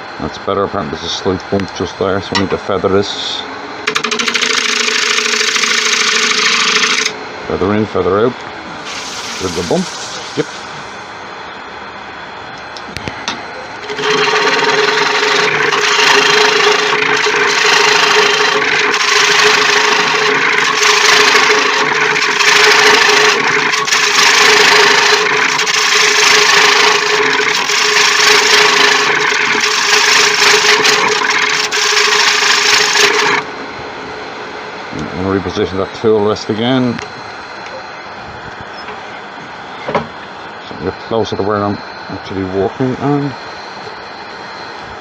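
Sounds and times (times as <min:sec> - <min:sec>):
wood lathe humming: 0:03.8 - 0:07.2, 0:08.8 - 0:11.0, 0:13.7 - 0:33.6
tool cutting wood on lathe: 0:03.9 - 0:07.2, 0:08.8 - 0:10.6, 0:13.8 - 0:33.5.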